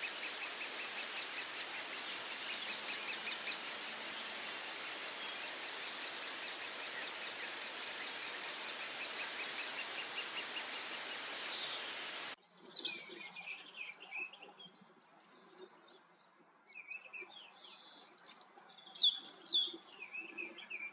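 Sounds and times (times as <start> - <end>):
birds chirping and whistling: 0.0 - 12.4
hiss: 0.0 - 12.4
nestlings begging chirps: 0.0 - 12.4.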